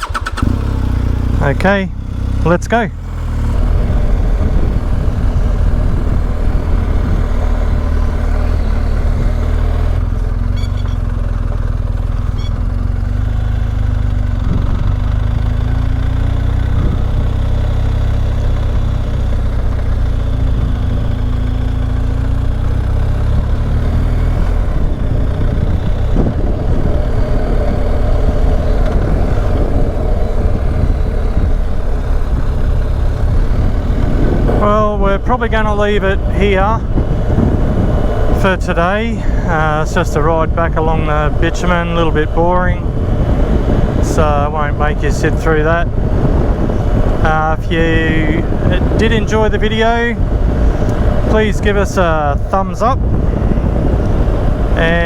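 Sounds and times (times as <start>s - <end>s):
motorcycle engine rumbling: 0.0s - 55.0s.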